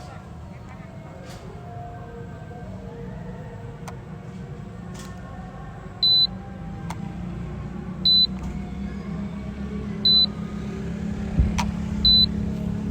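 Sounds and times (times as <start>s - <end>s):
high electronic warning beeps: 6.0s - 6.3s, 8.1s - 8.4s, 10.1s - 10.4s, 12.0s - 12.4s
steady low hum: 7.7s - 12.9s.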